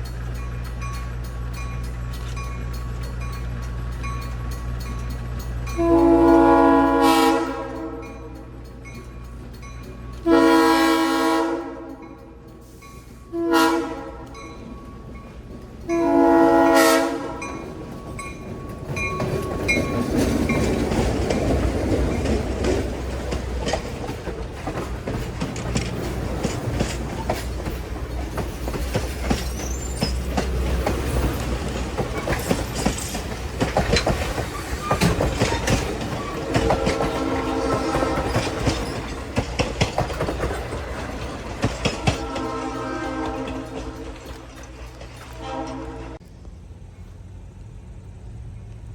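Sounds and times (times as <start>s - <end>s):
train rumbling past: 0.0s - 48.9s
wheels clicking over rail joints: 0.0s - 48.9s
locomotive air horn: 5.8s - 8.4s, 10.2s - 12.1s, 13.3s - 14.4s, 15.9s - 17.6s, 36.3s - 38.9s, 41.9s - 44.7s, 45.3s - 46.2s.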